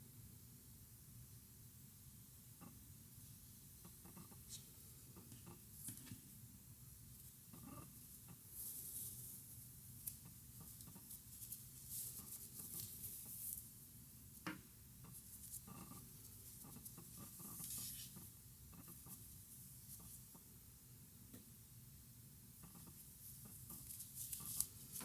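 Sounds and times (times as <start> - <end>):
yarn rustling with crochet hook: 7.1 - 14.5, 15.1 - 20.4, 22.6 - 25.0
yarn swishing: 23.2 - 25.0.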